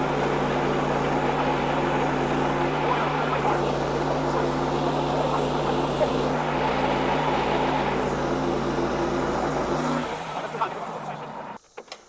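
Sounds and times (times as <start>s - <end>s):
bandsaw mill cutting log: 0.0s - 11.6s.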